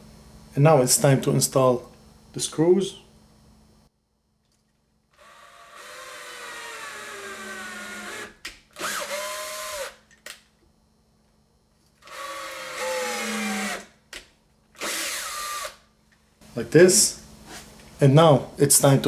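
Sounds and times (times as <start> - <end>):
power drill driving screws: 5.2 - 10.0, 12.0 - 13.9, 14.8 - 15.8.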